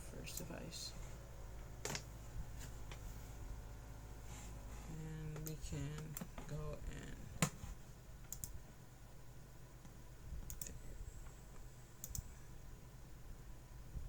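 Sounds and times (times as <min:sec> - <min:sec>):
faint low hum: 0:00.0 - 0:14.0
computer mouse clicks: 0:08.3 - 0:08.6, 0:09.8 - 0:12.3.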